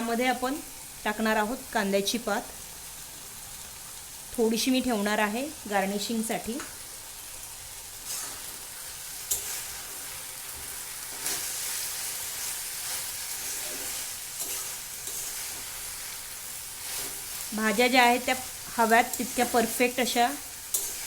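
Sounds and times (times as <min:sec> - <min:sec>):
food sizzling in hot oil: 0:00.0 - 0:21.0
utensil scraping and clinking pan: 0:10.6 - 0:16.1, 0:20.6 - 0:21.0.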